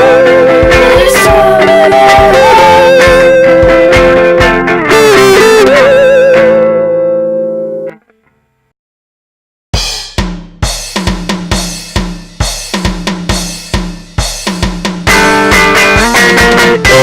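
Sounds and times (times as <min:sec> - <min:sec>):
rock drum kit beat: 0:00.0 - 0:06.6, 0:09.7 - 0:17.0
guitar and band playing: 0:00.0 - 0:08.2, 0:14.5 - 0:17.0.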